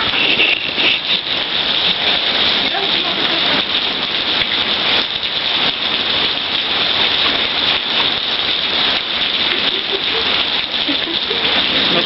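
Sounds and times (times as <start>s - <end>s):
heavy rain pouring: 0.0s - 12.0s.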